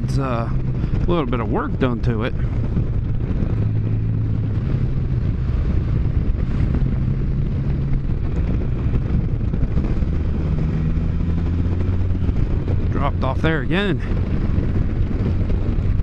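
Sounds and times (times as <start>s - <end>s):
motorcycle engine running: 0.0s - 16.0s
wind rushing over microphone: 0.0s - 16.0s.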